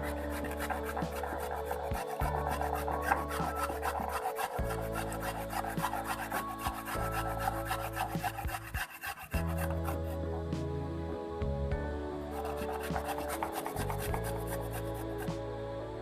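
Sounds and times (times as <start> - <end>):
grating rasping strokes: 0.0 - 10.5, 12.1 - 15.5.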